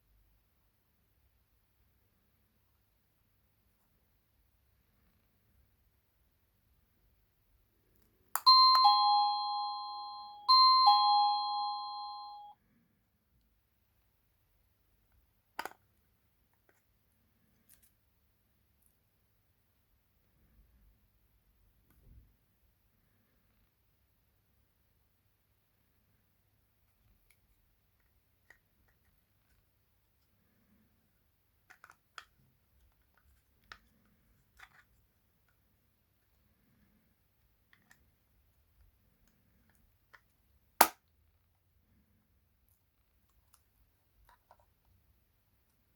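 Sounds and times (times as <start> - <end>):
two-tone doorbell chime: 8.4 - 12.5.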